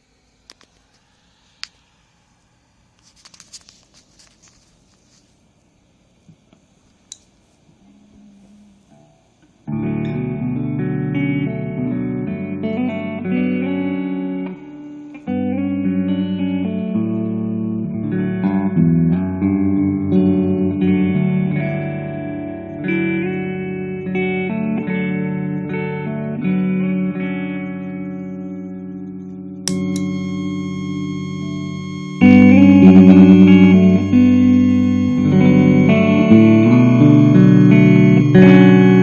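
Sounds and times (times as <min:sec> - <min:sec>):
electric guitar chords and notes: 0:09.7 - 0:39.0.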